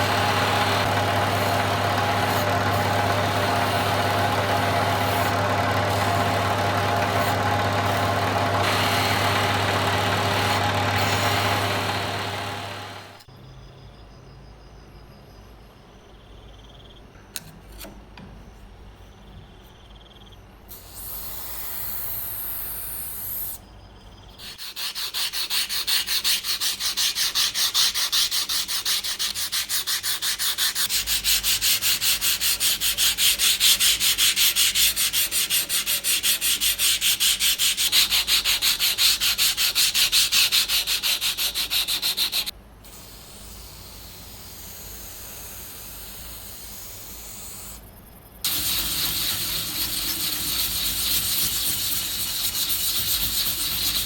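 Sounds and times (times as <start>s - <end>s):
sandpaper scraping rusty metal: 0.0s - 12.8s, 24.4s - 47.7s, 48.5s - 54.0s.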